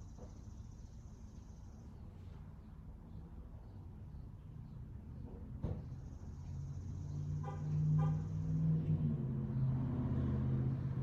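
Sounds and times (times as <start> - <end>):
car passing by: 6.4 - 11.0.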